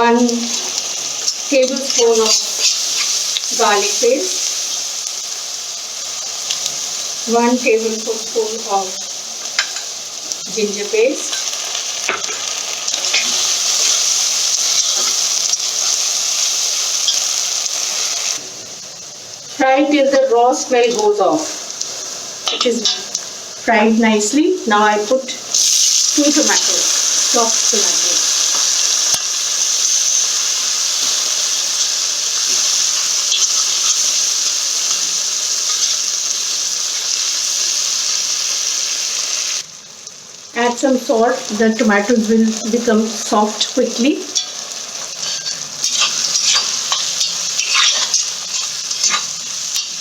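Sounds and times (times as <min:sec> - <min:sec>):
onions sizzling in hot oil: 0:00.0 - 0:50.0.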